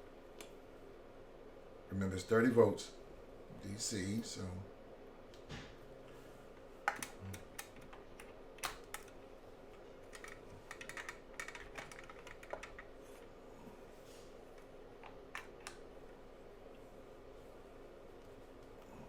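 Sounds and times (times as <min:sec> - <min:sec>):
clicks and taps of test equipment: 0:06.9 - 0:09.2.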